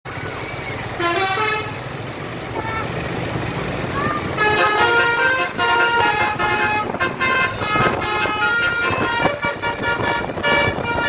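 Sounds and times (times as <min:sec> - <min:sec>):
multi-tone bus horn playing tune: 0:00.9 - 0:01.9, 0:04.3 - 0:11.0.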